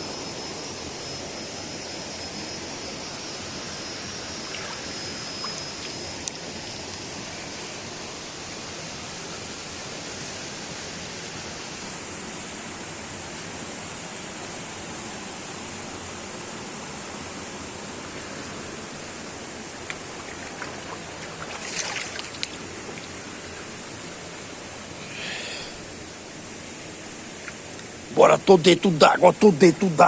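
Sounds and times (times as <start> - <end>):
flowing water rushing: 4.3 - 14.3, 17.8 - 30.0.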